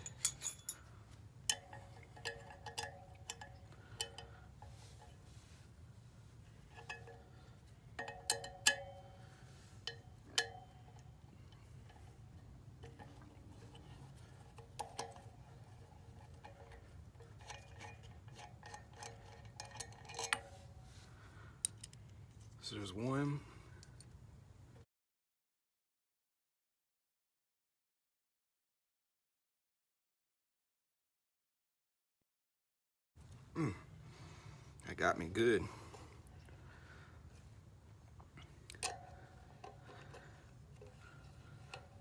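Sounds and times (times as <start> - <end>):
wrench clicking and clinking on nut: 0.0 - 0.9, 1.5 - 5.2, 6.7 - 12.2, 12.8 - 20.8, 21.6 - 22.1, 38.5 - 42.0.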